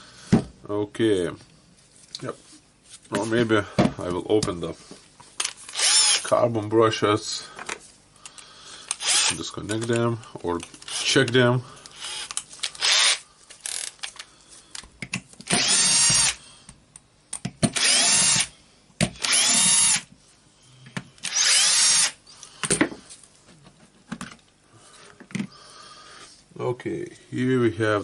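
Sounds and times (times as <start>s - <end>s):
cordless screwdriver whirring: 5.7s - 6.3s, 8.9s - 9.4s, 10.8s - 13.9s, 15.5s - 16.4s, 17.7s - 18.5s, 19.2s - 20.1s, 21.2s - 22.2s.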